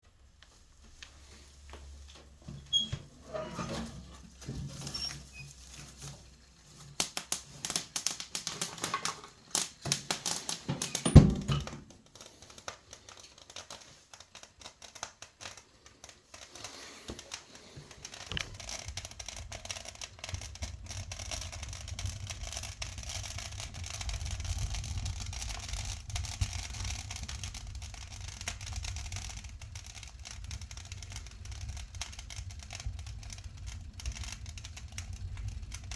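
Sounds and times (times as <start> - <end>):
fire crackling and popping: 0.0 - 35.9
low rush of flames: 16.7 - 35.9.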